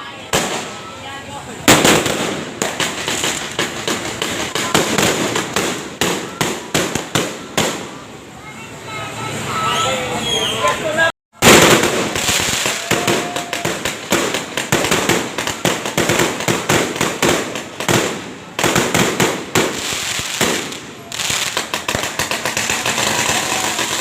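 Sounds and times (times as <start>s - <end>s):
fireworks cracking and banging: 0.0s - 8.3s, 11.4s - 24.0s.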